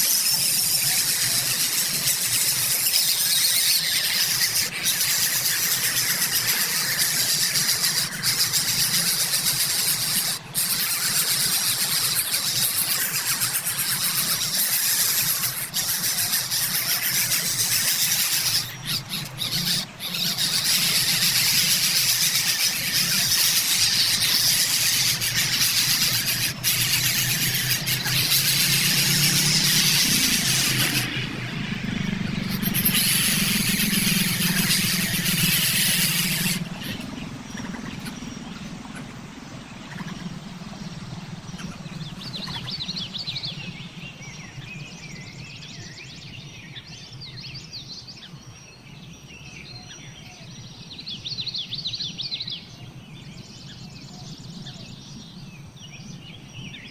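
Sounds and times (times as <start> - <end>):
nestling birds squealing: 0.0 - 43.7
faint bird chirps: 0.0 - 56.9.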